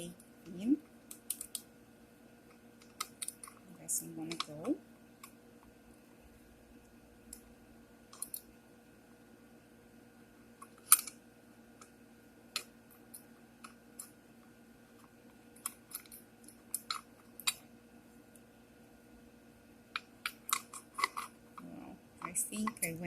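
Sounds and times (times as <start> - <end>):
faint steady hum: 0.0 - 23.0
small metal parts clicking: 1.1 - 1.6, 15.6 - 17.6, 20.0 - 21.3.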